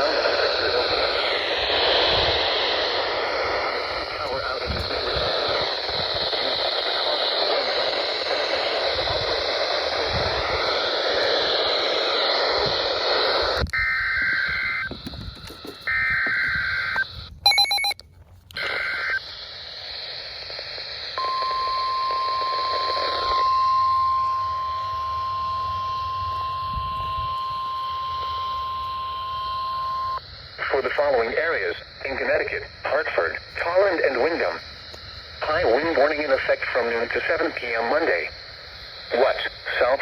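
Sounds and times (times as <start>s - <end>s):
radio static hiss: 0.0s - 18.0s, 18.6s - 40.0s
steady single-pitched alarm tone: 13.8s - 18.0s, 21.1s - 30.5s
warbling two-tone data bursts: 13.8s - 18.0s, 21.1s - 40.0s.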